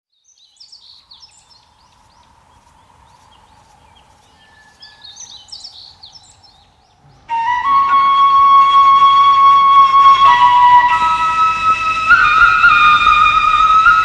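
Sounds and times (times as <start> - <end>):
small birds chirping: 0.1 - 7.3
steady background hiss: 0.4 - 14.0.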